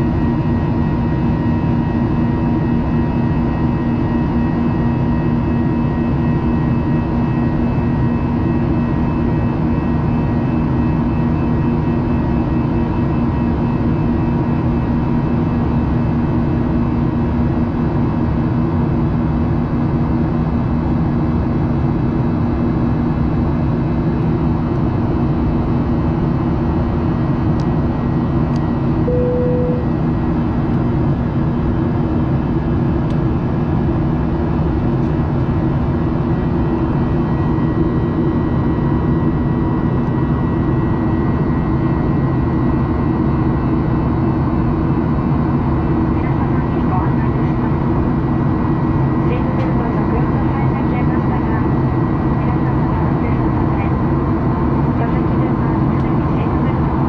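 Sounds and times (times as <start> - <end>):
airliner cabin engine drone: 0.0 - 57.0
faint tone: 29.1 - 30.0.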